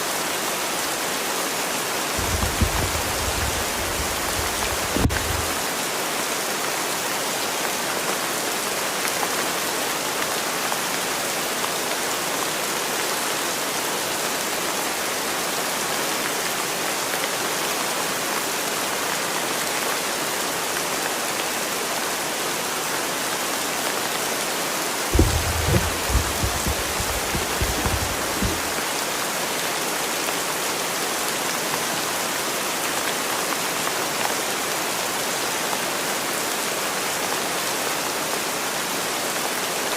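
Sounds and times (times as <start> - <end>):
steady rain hiss: 0.0 - 39.9
low irregular thumps and rumbles: 2.2 - 5.6, 25.1 - 28.8.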